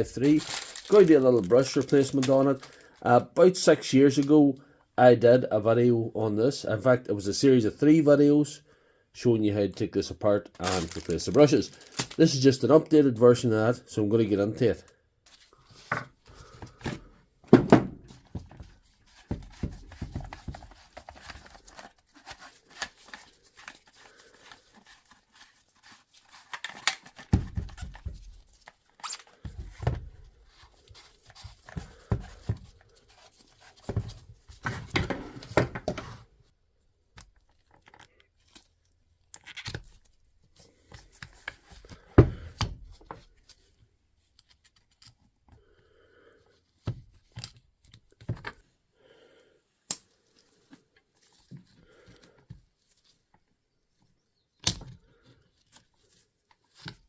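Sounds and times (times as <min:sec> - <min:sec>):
knocks and rattles of tool handling: 0:15.8 - 0:23.2, 0:26.4 - 0:28.4, 0:29.4 - 0:36.2, 0:46.8 - 0:48.7.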